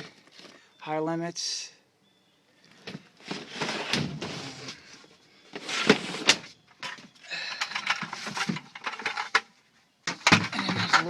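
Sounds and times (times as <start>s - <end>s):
parts clattering and scraping: 2.8s - 11.0s
parts rattling and rustling: 2.8s - 11.0s.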